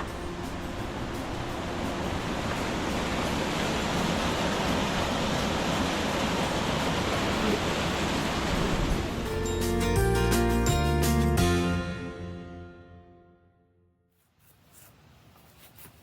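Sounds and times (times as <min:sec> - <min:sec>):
waterfall rushing: 0:00.0 - 0:09.4
music: 0:00.0 - 0:14.1.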